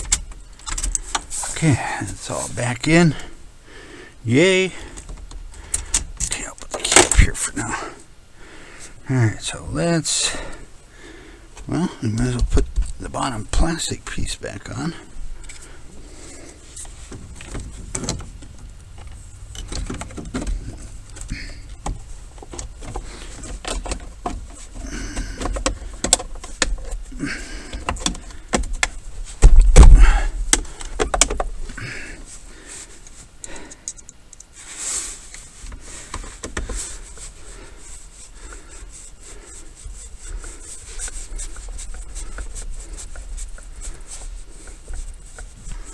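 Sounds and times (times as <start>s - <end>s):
loud thump: 29.4s - 30.3s
plastic clicks and knocks: 30.5s - 31.5s.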